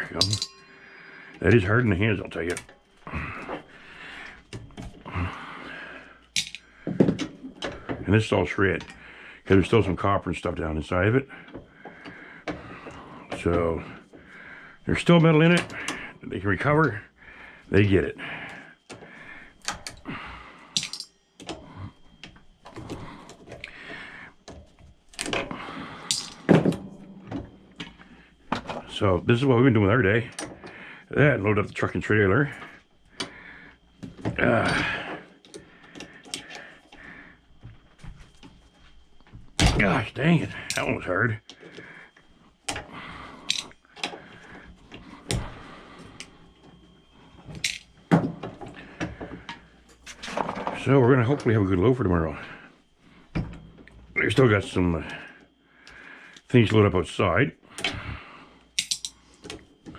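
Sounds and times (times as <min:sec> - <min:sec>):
metal pieces clinking: 0:00.0 - 0:00.8, 0:06.4 - 0:06.6, 0:20.8 - 0:21.1, 0:26.1 - 0:26.5, 0:43.5 - 0:43.8, 0:58.8 - 0:59.2
scrap metal clinking and clattering: 0:00.0 - 0:01.9, 0:06.3 - 0:07.8, 0:20.8 - 0:21.6, 0:24.5 - 0:28.9.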